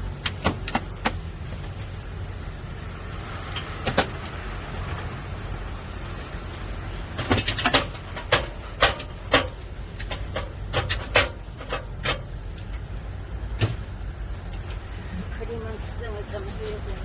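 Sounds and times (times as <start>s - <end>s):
metal molds clacking: 7.2s - 12.9s.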